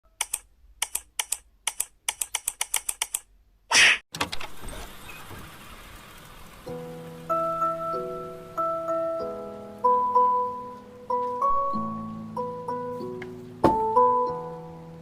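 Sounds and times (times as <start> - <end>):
keyboard typing: 0.1 - 3.3
music with chime-like notes: 7.0 - 15.0.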